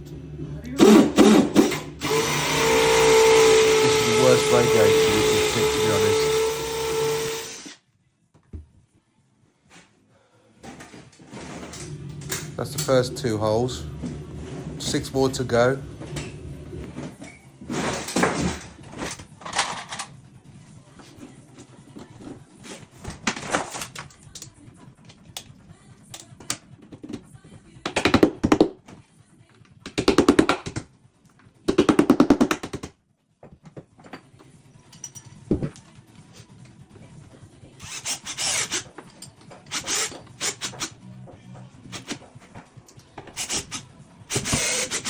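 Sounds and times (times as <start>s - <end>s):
power drill drilling into wall: 0.8s - 7.8s, 37.8s - 38.8s, 39.7s - 40.9s, 43.4s - 45.0s
knocks and handling sounds: 10.6s - 13.3s, 13.9s - 20.2s, 20.9s - 37.5s, 38.7s - 44.8s.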